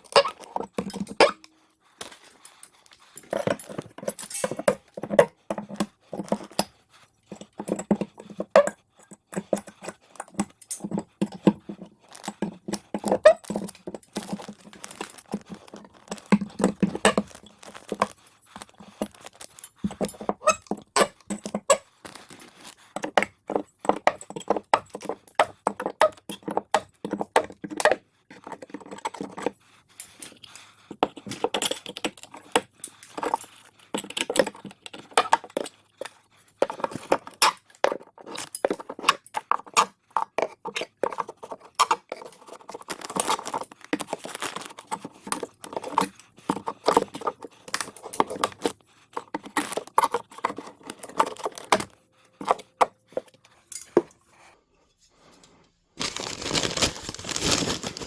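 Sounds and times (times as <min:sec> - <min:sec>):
carpentry tools clattering: 0:03.2 - 0:05.2.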